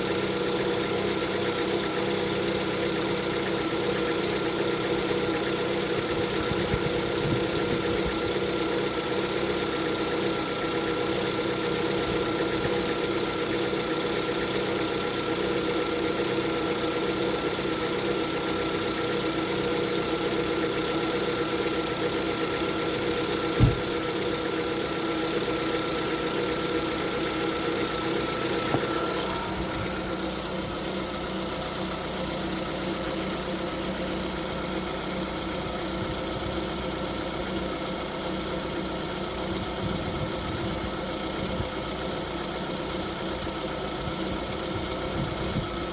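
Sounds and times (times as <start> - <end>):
car engine idling with knocking: 0.0 - 45.9
sharp thump: 23.6 - 24.0, 28.6 - 29.8.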